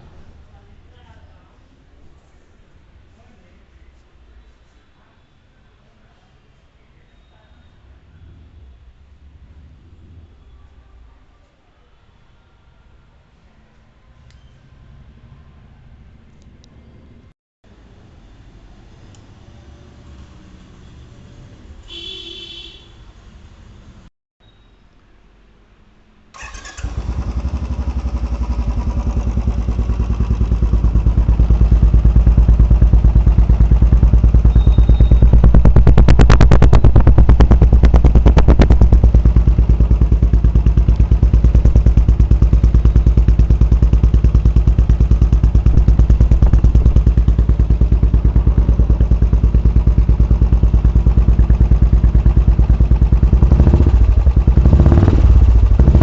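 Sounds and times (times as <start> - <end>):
motorcycle engine idling: 26.4 - 56.0
motorcycle throttle blips: 26.4 - 56.0.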